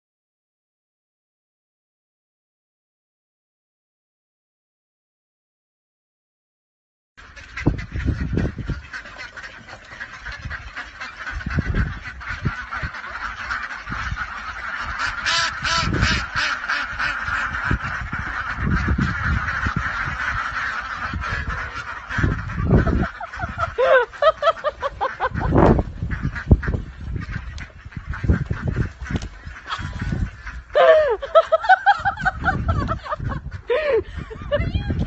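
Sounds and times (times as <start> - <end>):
honking animal calls: 7.4 - 33.9.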